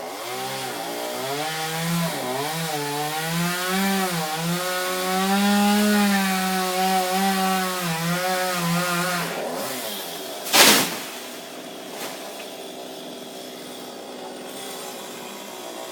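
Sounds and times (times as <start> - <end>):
chainsaw cutting wood: 0.0 - 15.9
loud crash: 10.5 - 11.4.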